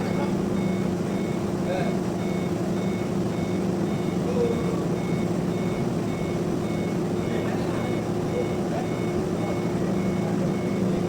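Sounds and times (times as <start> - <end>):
electronic warning beeps: 0.0 - 11.0.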